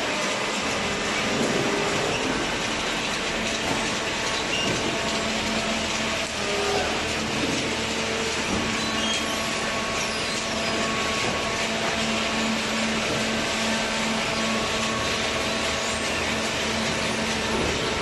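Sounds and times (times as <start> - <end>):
baler machine humming and hissing: 0.0 - 18.0.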